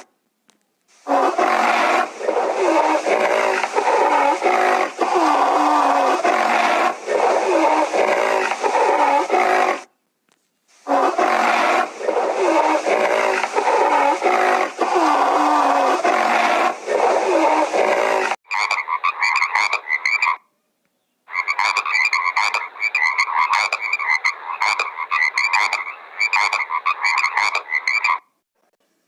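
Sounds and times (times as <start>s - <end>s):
dense noisy sound: 0.9s - 9.9s, 10.7s - 18.4s
frogs croaking: 10.8s - 20.4s, 21.3s - 28.3s.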